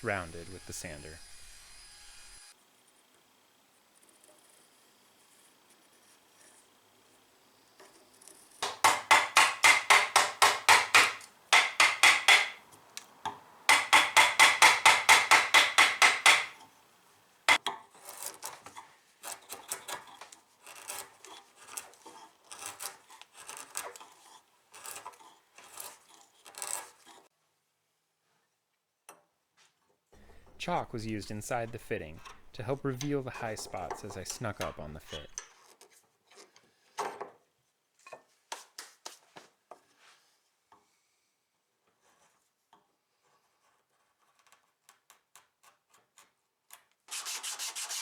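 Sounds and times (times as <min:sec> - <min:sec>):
rasping on wood: 0:08.6 - 0:12.6, 0:13.7 - 0:16.6, 0:19.2 - 0:27.2.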